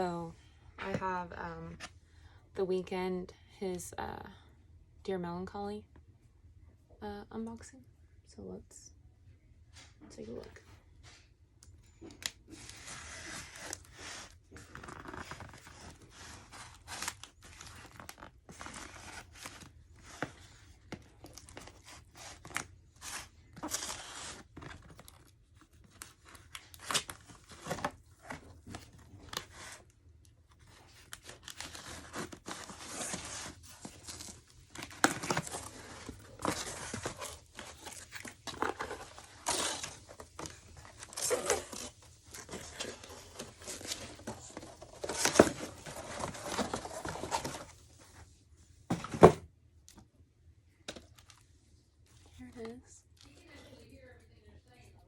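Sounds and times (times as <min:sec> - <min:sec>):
packaging tearing and crinkling: 0:21.4 - 0:29.8.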